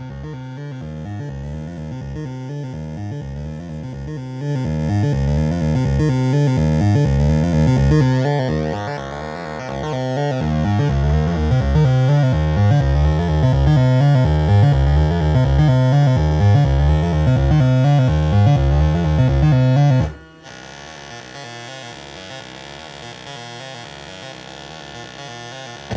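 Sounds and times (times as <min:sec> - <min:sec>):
synthesizer bass sequence: 0:00.0 - 0:20.2.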